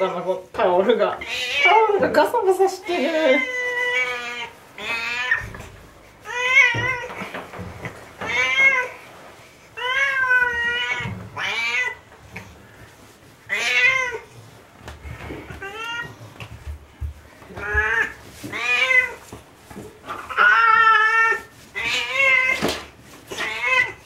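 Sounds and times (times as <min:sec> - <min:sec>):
cat meowing: 0:03.3 - 0:05.6, 0:09.8 - 0:12.0, 0:13.5 - 0:14.3, 0:20.2 - 0:22.7, 0:23.3 - 0:24.0.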